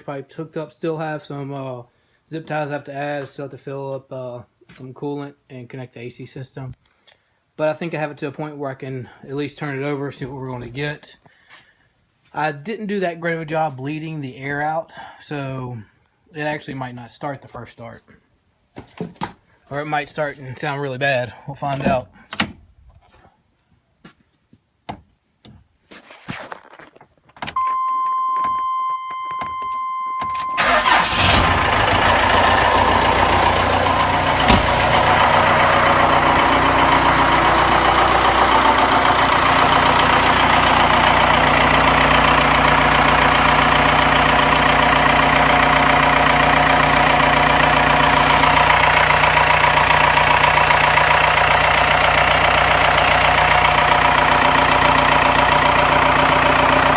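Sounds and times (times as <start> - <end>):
diesel engine idling: 30.4 - 56.9.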